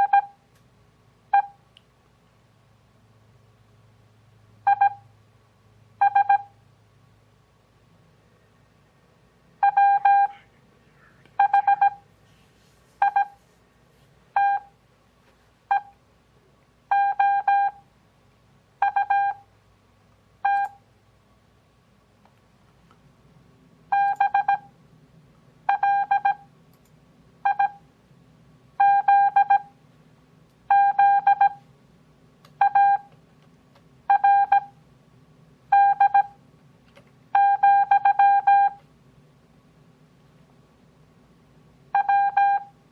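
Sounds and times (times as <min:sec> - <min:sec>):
morse code beeps: 0:00.0 - 0:00.4, 0:04.7 - 0:05.0, 0:06.0 - 0:06.5, 0:09.6 - 0:10.4, 0:11.4 - 0:12.0, 0:13.0 - 0:13.4, 0:14.4 - 0:14.7, 0:16.9 - 0:17.8, 0:18.8 - 0:19.4, 0:20.4 - 0:20.8, 0:23.9 - 0:24.7, 0:25.7 - 0:26.5, 0:27.4 - 0:27.8, 0:28.8 - 0:29.7, 0:30.7 - 0:31.6, 0:32.6 - 0:33.1, 0:34.1 - 0:34.8, 0:35.7 - 0:36.4, 0:37.4 - 0:38.8, 0:42.0 - 0:42.7.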